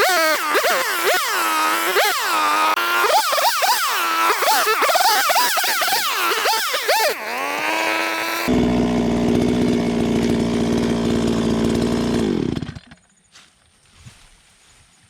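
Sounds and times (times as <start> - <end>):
chainsaw cutting tree trunk: 0.0 - 13.1.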